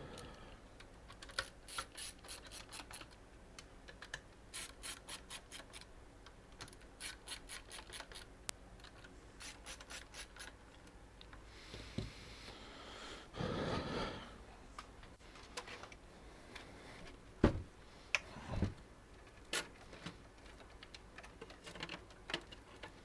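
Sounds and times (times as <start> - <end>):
cables rubbing and clicking: 6.6 - 11.4.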